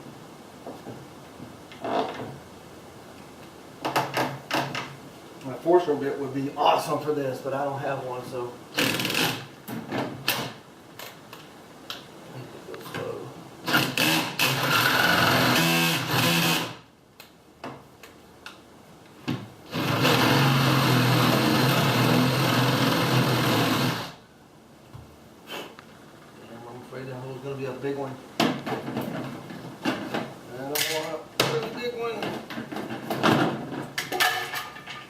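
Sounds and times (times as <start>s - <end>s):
drill boring into wood: 8.8s - 9.5s, 13.7s - 16.8s, 19.7s - 24.2s.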